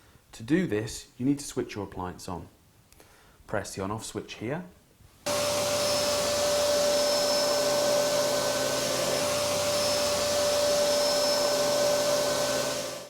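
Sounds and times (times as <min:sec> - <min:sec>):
vacuum cleaner running: 0:05.3 - 0:13.0.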